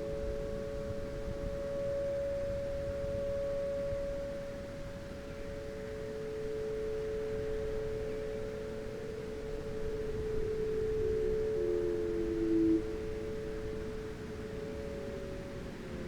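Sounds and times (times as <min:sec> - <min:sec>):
warning siren two-note chord: 0:09.5 - 0:16.0.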